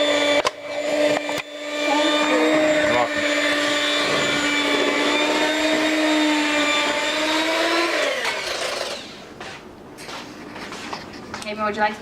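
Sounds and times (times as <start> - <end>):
electric hand mixer running: 0.0 - 9.3.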